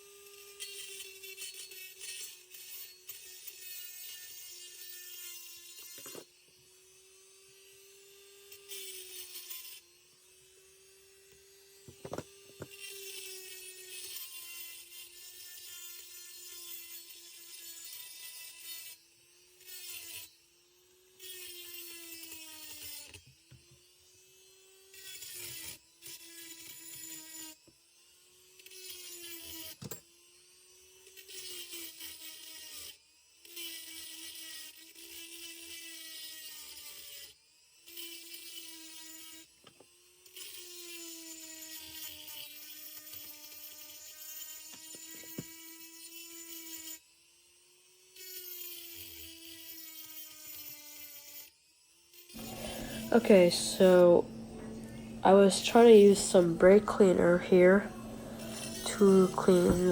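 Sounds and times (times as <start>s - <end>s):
rotary grinder whining: 0.2s - 23.2s, 52.3s - 59.9s.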